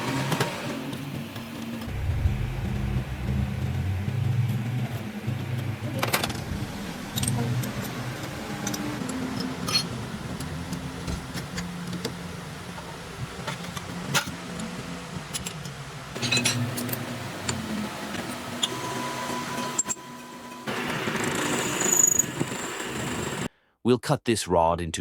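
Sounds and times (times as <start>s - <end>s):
metal lathe motor hum: 1.9s - 13.2s.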